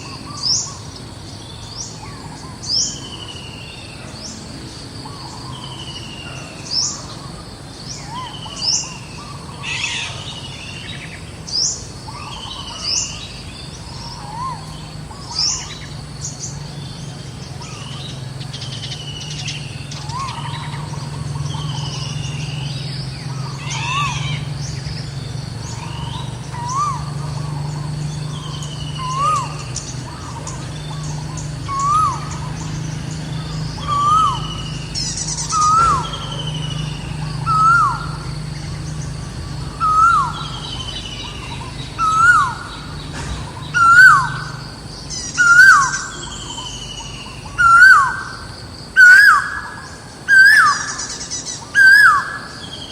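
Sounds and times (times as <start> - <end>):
bird rising and falling call: 17.6 - 52.9
bird falling whistles: 35.5 - 36.3.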